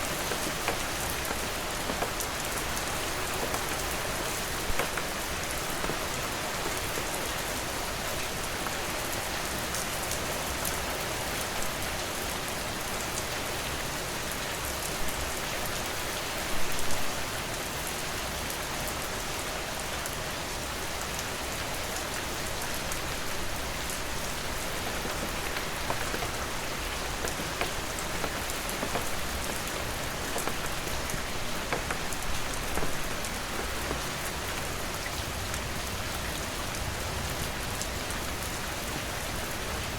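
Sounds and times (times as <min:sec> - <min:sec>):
raindrops spattering: 0:00.0 - 0:11.9, 0:21.9 - 0:36.4
rain falling: 0:00.0 - 0:39.9.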